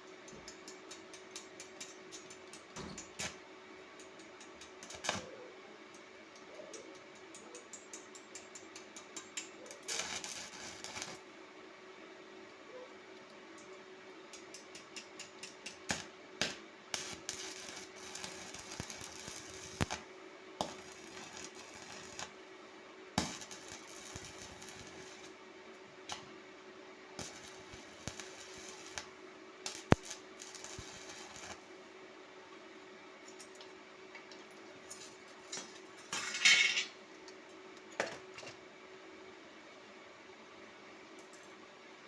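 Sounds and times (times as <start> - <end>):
faint steady hum: 0.0 - 42.0.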